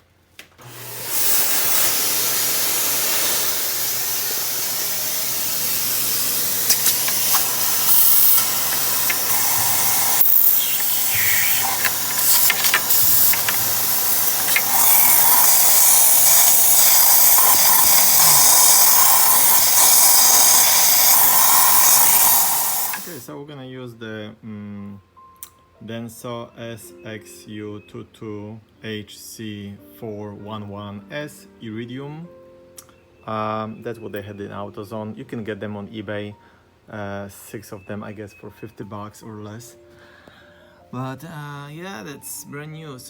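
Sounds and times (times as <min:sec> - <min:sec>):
vacuum cleaner running: 0:00.6 - 0:23.3
short clicks: 0:06.6 - 0:23.2.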